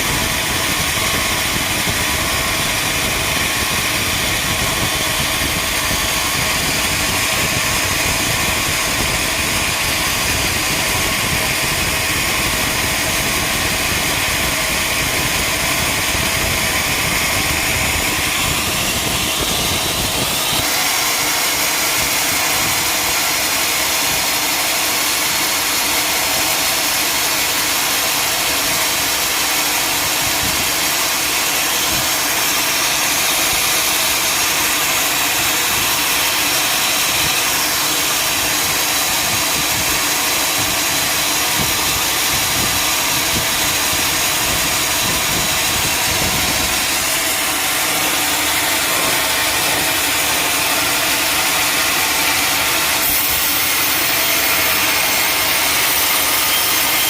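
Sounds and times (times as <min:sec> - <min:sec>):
sawmill machinery humming: 0:00.0 - 0:57.0.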